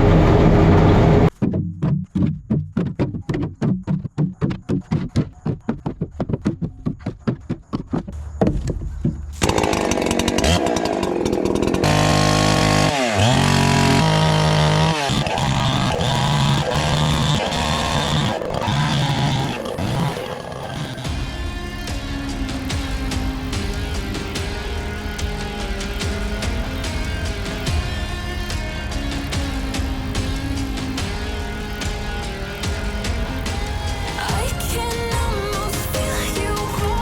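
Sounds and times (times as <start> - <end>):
chainsaw engine revving: 9.4 - 34.4.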